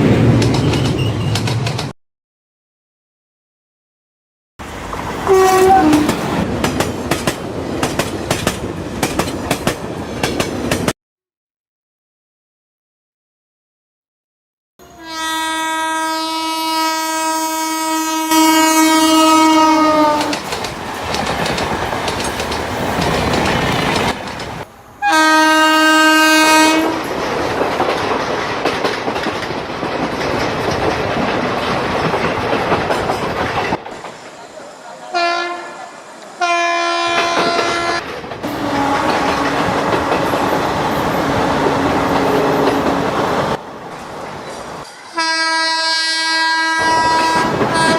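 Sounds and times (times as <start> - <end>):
train rumble and rail clatter: 0.0 - 1.9, 4.6 - 10.9, 15.1 - 47.9
locomotive horn blasts: 5.2 - 6.2, 14.8 - 20.4, 25.0 - 27.0, 35.1 - 35.8, 36.4 - 40.6, 45.1 - 47.9.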